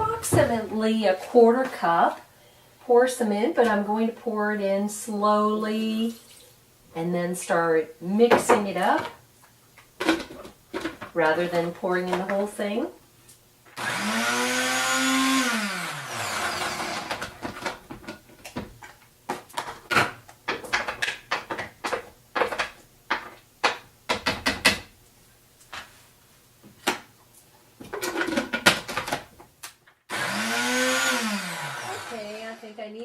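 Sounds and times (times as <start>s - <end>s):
blender motor: 13.8s - 17.6s, 30.1s - 32.8s.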